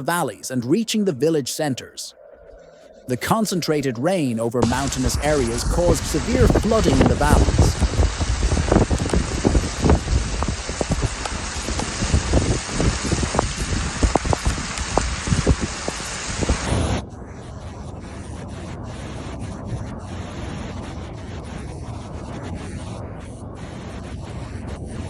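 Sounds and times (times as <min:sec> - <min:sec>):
steady hiss: 0:00.0 - 0:25.0
heavy rain: 0:04.6 - 0:17.0
wind buffeting microphone: 0:04.6 - 0:25.0.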